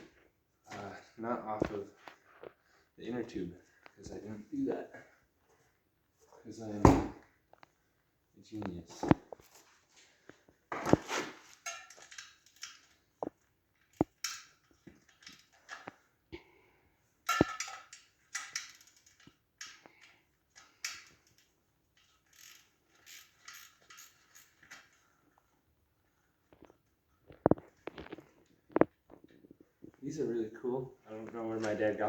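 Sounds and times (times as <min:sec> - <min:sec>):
metal tools clinking: 0:11.4 - 0:13.0, 0:17.3 - 0:25.0
ratcheting wrench clicking: 0:13.9 - 0:15.5, 0:17.3 - 0:24.8.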